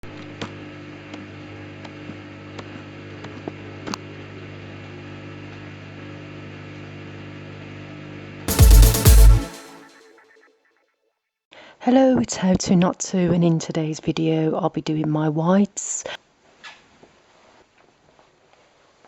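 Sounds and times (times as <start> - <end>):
sudden loud burst: 8.5 - 10.0.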